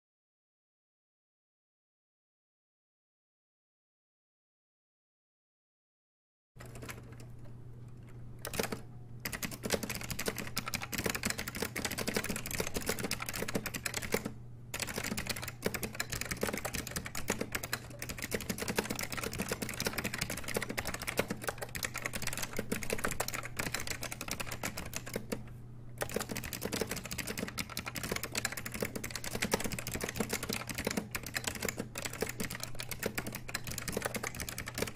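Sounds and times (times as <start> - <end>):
fast typing on mechanical keyboard: 6.6 - 7.3, 8.4 - 25.4, 26.0 - 34.9
steady low hum: 6.6 - 34.9.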